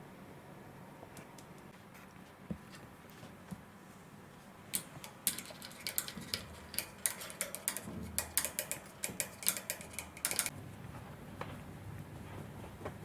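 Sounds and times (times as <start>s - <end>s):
light clicks and taps: 4.7s - 10.5s.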